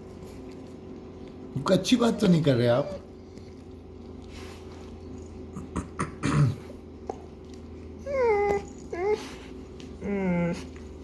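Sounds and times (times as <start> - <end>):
dog whining: 1.8 - 3.7, 7.8 - 11.0.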